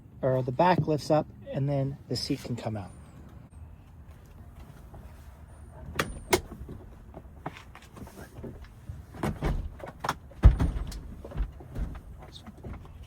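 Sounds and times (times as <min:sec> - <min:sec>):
seat latch clicks and clunks: 0:05.9 - 0:06.9.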